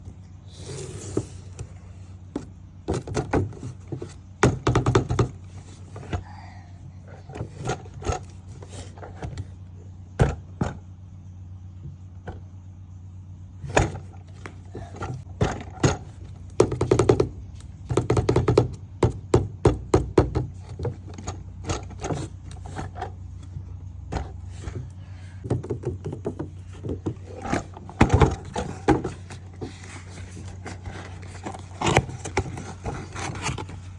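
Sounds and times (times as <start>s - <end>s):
steady low hum: 0.0s - 33.9s
hands handling packaging: 25.5s - 33.9s.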